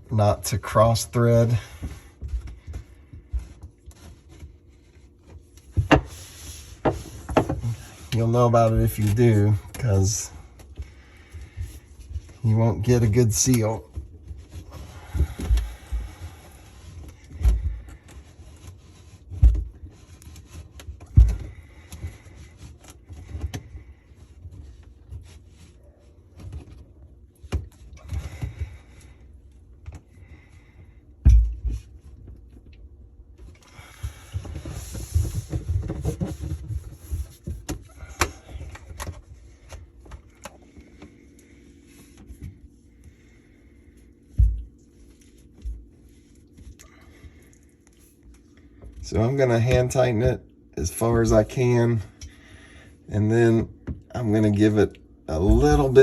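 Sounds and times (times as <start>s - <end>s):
knocks and bumps of plastic pipes: 1.3s - 9.4s, 10.6s - 25.7s, 29.8s - 32.8s, 33.5s - 43.2s, 44.2s - 46.3s, 55.3s - 56.0s
plastic scraping and rubbing: 34.4s - 42.8s.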